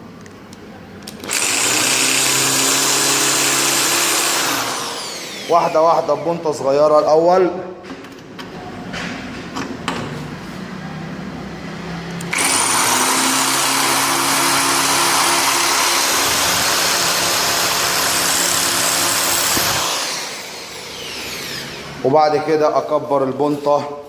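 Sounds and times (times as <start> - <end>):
electric drill drilling: 1.1 - 6.3, 12.2 - 22.0.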